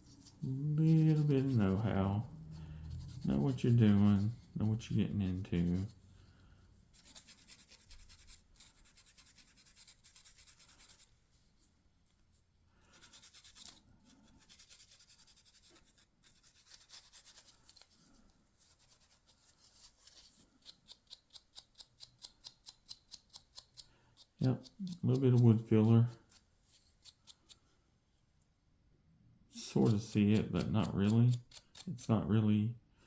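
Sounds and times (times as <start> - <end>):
hand rubbing wooden grip: 0.0 - 6.0.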